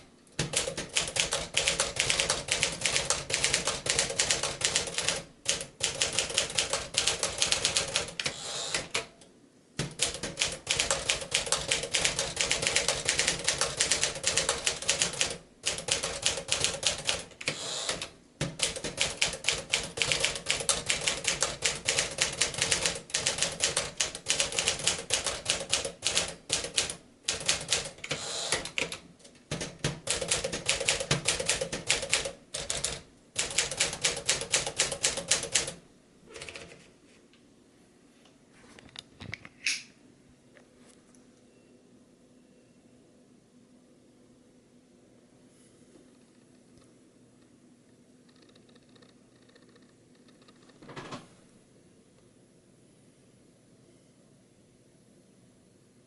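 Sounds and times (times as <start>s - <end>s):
manual typewriter typing: 0.4s - 9.1s, 9.8s - 36.8s.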